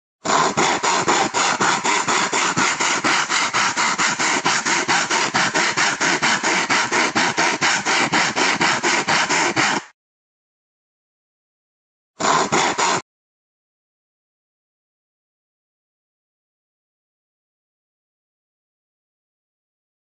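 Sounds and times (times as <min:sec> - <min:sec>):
hand saw cutting wood: 0:00.2 - 0:10.0, 0:12.2 - 0:13.0.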